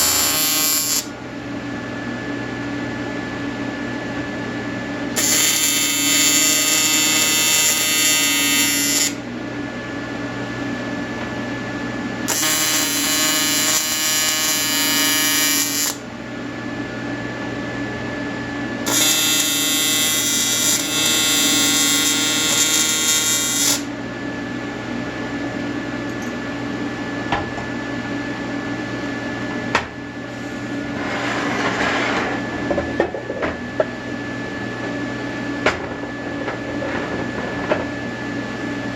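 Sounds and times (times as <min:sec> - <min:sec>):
welding arc buzzing: 0:00.0 - 0:01.1, 0:05.1 - 0:09.2, 0:12.3 - 0:16.1, 0:18.8 - 0:23.9
steady hum: 0:00.0 - 0:20.9.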